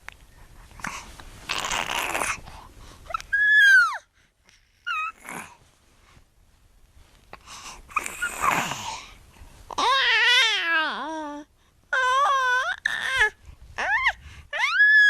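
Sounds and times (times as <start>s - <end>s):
baby vocalizing: 0.8s - 2.4s, 7.9s - 9.0s
baby squealing: 12.0s - 15.0s.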